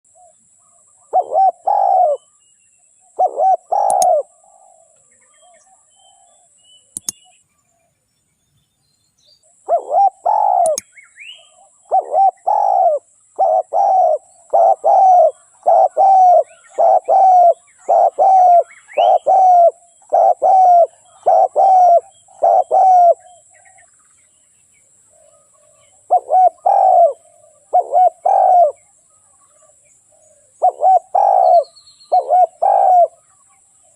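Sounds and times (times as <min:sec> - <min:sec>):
dove cooing: 0:01.0 - 0:02.3, 0:03.1 - 0:06.5, 0:09.6 - 0:10.8, 0:11.4 - 0:23.8, 0:25.2 - 0:28.9, 0:29.6 - 0:33.3.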